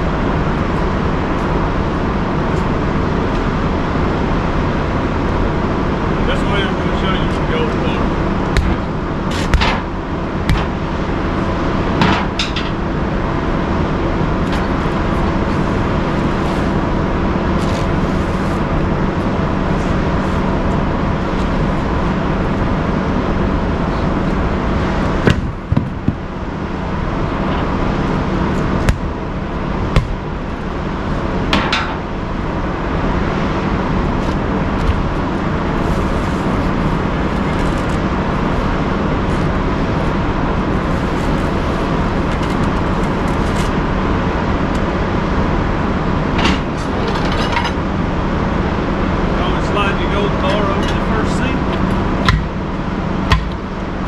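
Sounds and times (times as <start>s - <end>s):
loud machinery drone: 0.0s - 54.0s
steel bar striking tire rim: 53.3s - 53.6s.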